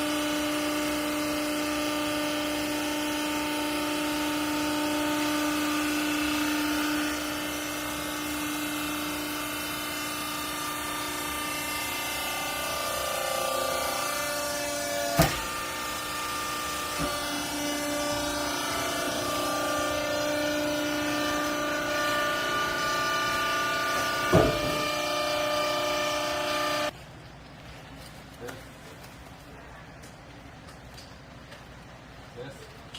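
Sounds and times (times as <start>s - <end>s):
baling press humming: 0.0s - 26.9s
sharp knocks of machine: 15.1s - 15.6s, 24.0s - 25.0s.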